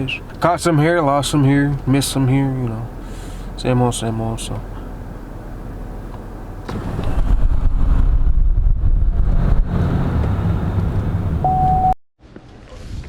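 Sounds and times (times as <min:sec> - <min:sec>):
car road and engine rumble: 0:00.0 - 0:13.0
short steady beep: 0:11.4 - 0:12.0.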